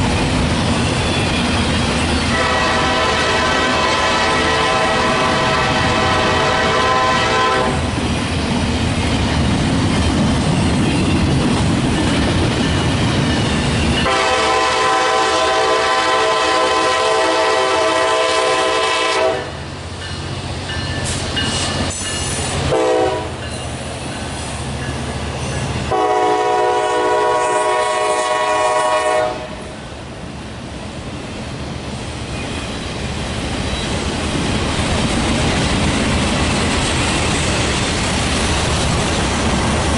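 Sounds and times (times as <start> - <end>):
loud train rumble: 0.0 - 39.9
locomotive air horn: 2.3 - 7.9, 14.0 - 19.6, 22.6 - 23.4, 25.9 - 29.7.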